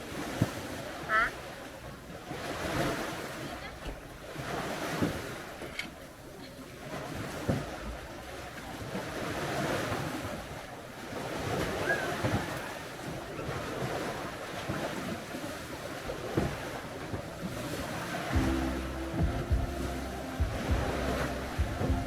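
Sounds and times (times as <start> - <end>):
sea waves washing onto beach: 0.0 - 22.0
wind buffeting microphone: 16.2 - 22.0.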